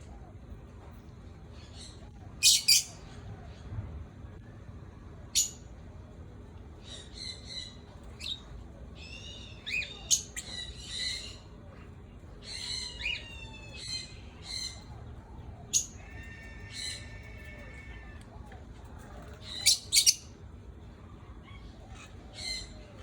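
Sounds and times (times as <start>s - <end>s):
parrots squawking: 1.6s - 3.1s, 12.4s - 15.0s, 19.0s - 20.3s, 21.4s - 23.0s.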